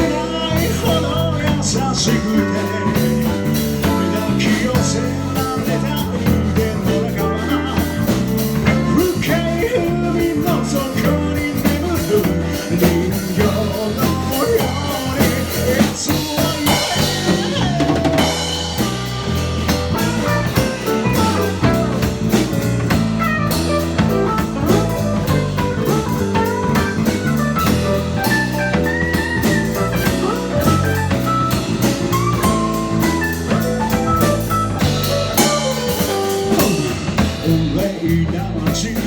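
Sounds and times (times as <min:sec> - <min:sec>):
bass guitar: 0:00.0 - 0:39.0
drum kit: 0:00.0 - 0:39.0
lead guitar melody: 0:18.2 - 0:37.5.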